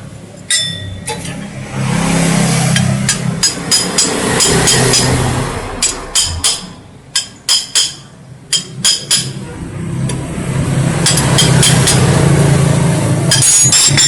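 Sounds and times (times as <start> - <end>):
hand tools tapping on metal: 0.5 - 1.2, 2.7 - 9.4, 11.0 - 12.1, 13.3 - 14.0.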